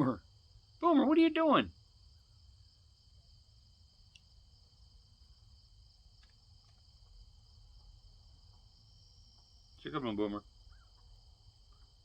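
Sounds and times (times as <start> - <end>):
crickets trilling: 0.0 - 12.0
faint ticks: 4.0 - 4.4, 6.0 - 12.0.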